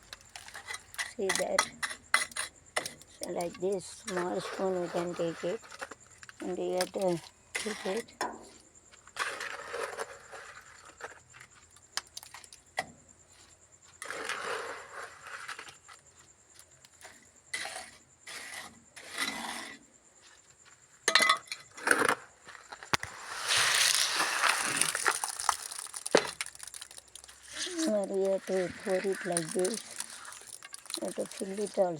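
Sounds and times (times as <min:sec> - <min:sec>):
metal spoon scraping mortar: 0:00.3 - 0:08.2, 0:23.0 - 0:31.9.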